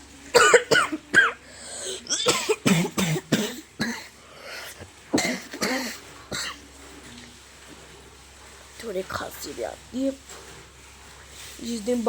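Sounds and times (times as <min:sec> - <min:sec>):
boy coughing: 0:00.3 - 0:06.6.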